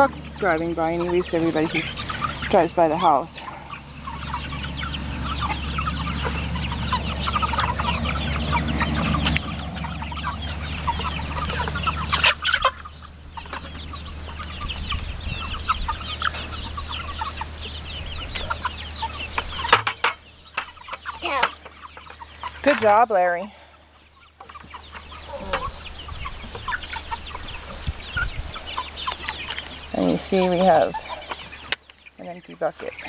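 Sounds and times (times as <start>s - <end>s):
truck passing rumble: 0.0s - 23.7s
young chickens clucking and peeping: 0.0s - 33.0s.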